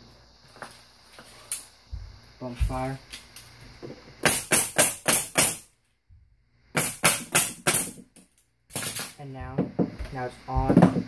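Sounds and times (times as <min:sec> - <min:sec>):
nail gun firing: 0:04.2 - 0:05.6, 0:06.8 - 0:08.0.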